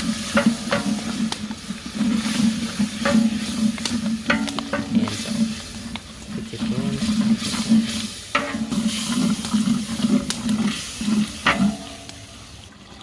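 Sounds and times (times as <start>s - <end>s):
stirring sizzling liquid in pot: 0.0s - 12.8s
spoon knocking against pot: 0.3s - 1.0s, 4.2s - 5.1s.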